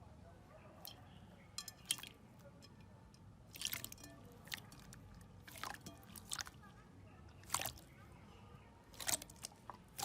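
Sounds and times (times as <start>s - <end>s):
slime squishing: 3.5s - 8.0s, 8.8s - 10.0s.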